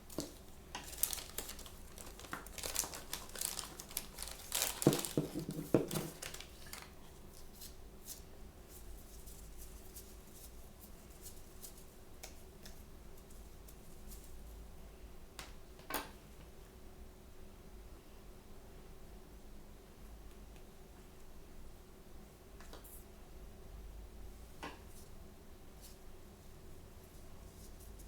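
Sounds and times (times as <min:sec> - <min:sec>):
packaging crinkling and tearing: 0:00.1 - 0:07.0.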